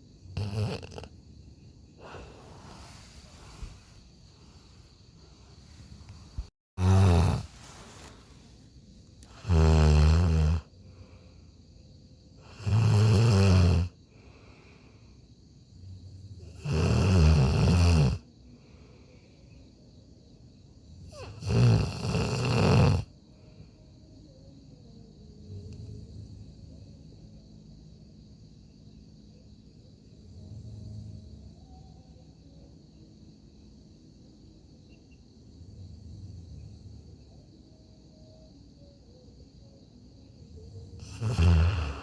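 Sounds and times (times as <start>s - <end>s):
person snoring: 0.4s - 1.1s, 2.0s - 4.0s, 6.4s - 8.5s, 9.2s - 10.7s, 12.4s - 14.0s, 16.4s - 18.2s, 21.1s - 23.1s, 41.0s - 42.0s.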